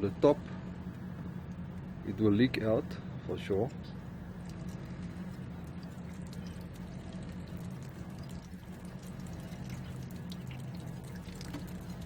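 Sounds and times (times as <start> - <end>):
steady low hum: 0.0 - 12.0
liquid dripping: 3.7 - 12.0.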